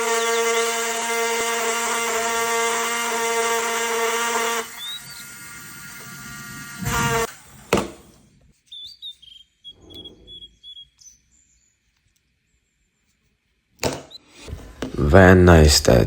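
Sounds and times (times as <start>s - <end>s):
rotary engraving tool whining: 0.0s - 11.4s
faint high chirps: 8.6s - 13.2s.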